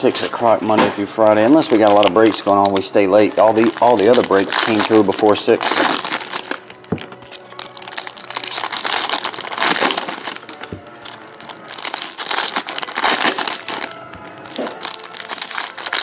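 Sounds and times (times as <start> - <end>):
plastic packaging crinkling: 0.0 - 16.0.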